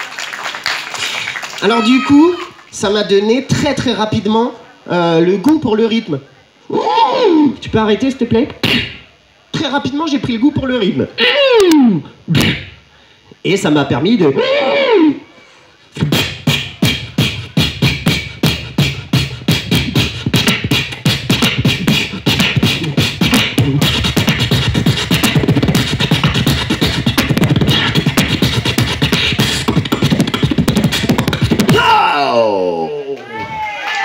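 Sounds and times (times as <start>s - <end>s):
person beatboxing: 6.7s - 9.1s, 11.2s - 12.8s, 15.9s - 32.8s.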